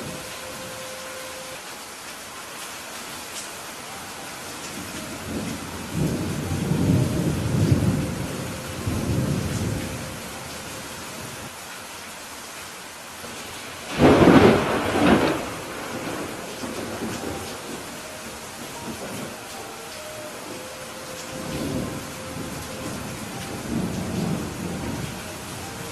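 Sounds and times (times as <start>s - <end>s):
heavy rain hiss: 0.0s - 25.9s
thunder rumbling: 4.8s - 11.4s, 13.8s - 25.9s
thunderclap: 13.9s - 17.8s.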